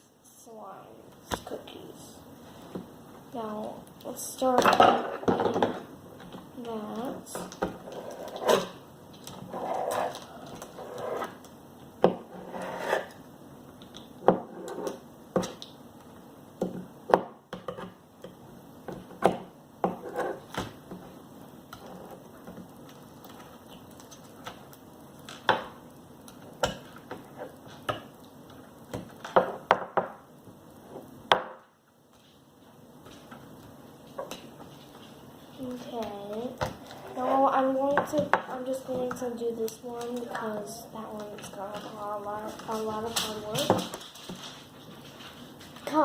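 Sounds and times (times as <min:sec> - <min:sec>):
rubbing and scraping: 0:12.2 - 0:13.2.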